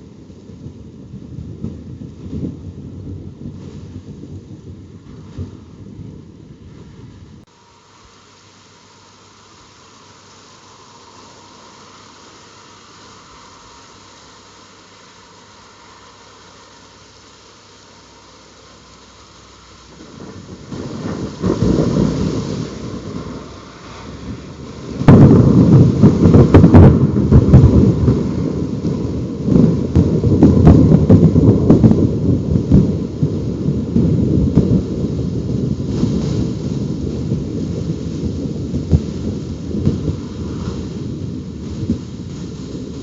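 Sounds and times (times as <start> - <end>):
thunder rumbling and crackling: 0.0 - 7.5, 18.8 - 43.0
rain hiss: 0.0 - 43.0.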